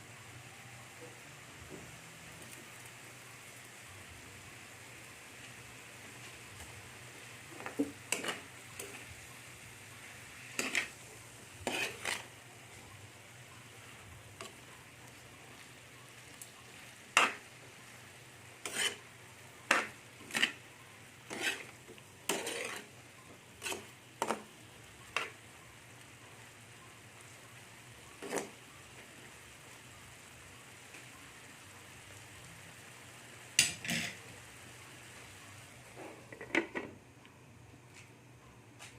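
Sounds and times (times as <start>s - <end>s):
faint steady sizzle: 0.0s - 38.9s
utensil scraping a frying pan: 7.4s - 9.2s, 10.2s - 12.9s, 16.4s - 17.6s, 18.4s - 24.5s, 25.1s - 25.4s, 28.2s - 28.6s, 33.6s - 34.2s.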